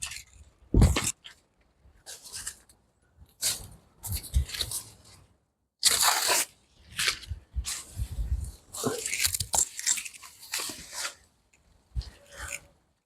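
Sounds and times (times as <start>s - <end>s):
dry plant material crunching: 8.7s - 11.2s.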